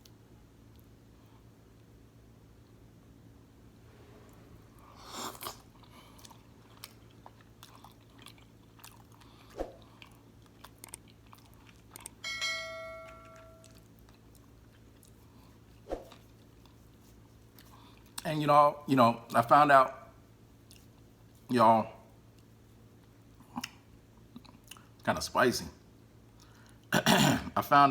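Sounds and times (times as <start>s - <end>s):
chewing and mouth clicks: 5.3s - 12.3s, 13.3s - 18.3s, 20.6s - 21.5s, 22.3s - 25.0s
brief ringing tone: 12.2s - 13.7s.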